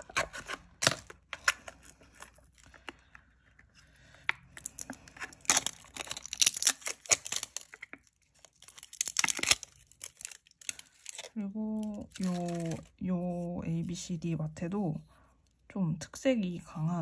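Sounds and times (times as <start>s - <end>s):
tape peeling off roll crackling: 4.6s - 11.4s.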